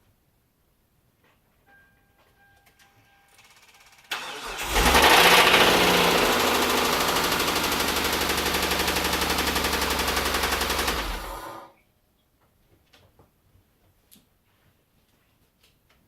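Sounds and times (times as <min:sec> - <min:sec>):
car engine idling with knocking: 0:04.9 - 0:11.6.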